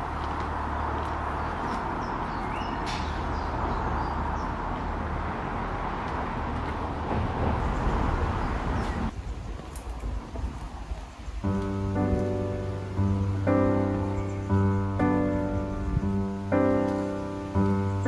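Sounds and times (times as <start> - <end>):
traffic hum: 0.0 - 18.0
bird chirps: 1.4 - 4.6, 12.8 - 18.0.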